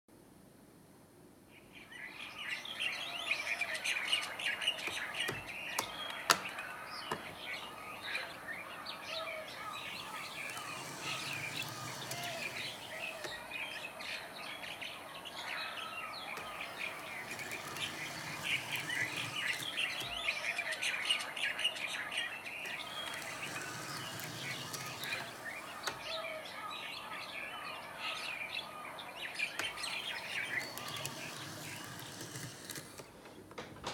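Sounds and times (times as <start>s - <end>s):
small birds chirping: 28.4s - 33.0s.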